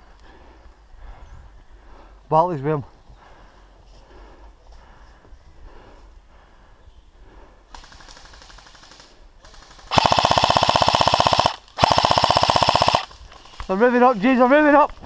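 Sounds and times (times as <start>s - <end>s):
airsoft gun firing full auto: 7.7s - 13.8s.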